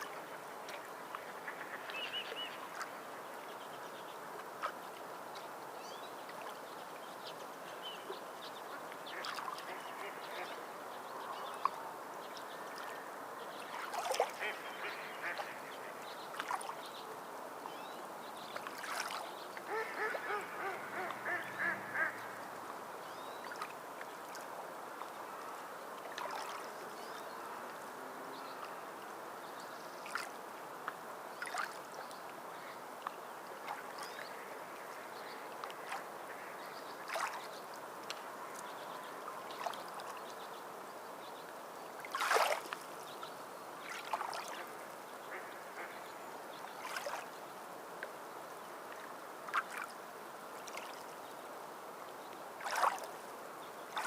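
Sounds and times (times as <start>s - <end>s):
small water splashes: 4.4s - 11.8s, 12.5s - 17.0s, 17.6s - 29.2s, 29.9s - 38.8s, 39.4s - 40.4s, 41.5s - 51.3s, 52.2s - 54.0s
bird calling: 19.6s - 22.4s.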